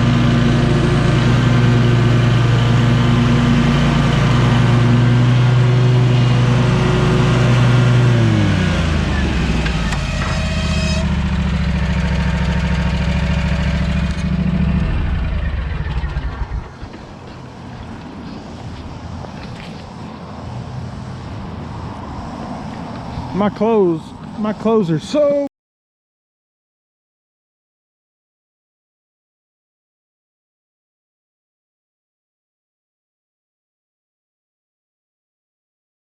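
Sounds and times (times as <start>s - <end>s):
mower engine running: 0.0s - 20.2s
brief high whine: 8.8s - 12.6s.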